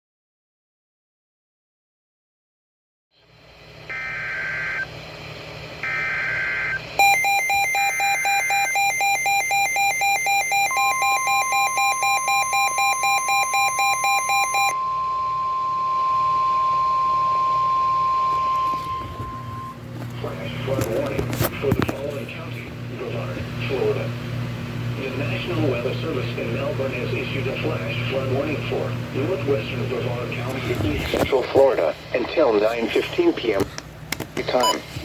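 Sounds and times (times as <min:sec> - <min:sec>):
warbling digital data tones: 0:05.8 - 0:15.4
rapid beeping alarm: 0:05.8 - 0:19.8
steady single-pitched alarm tone: 0:05.8 - 0:19.9.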